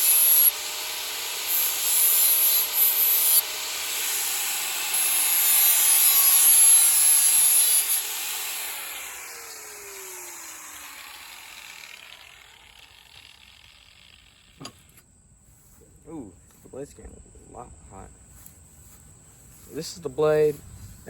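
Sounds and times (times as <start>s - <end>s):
power sander grinding steel blade: 0.0s - 15.0s.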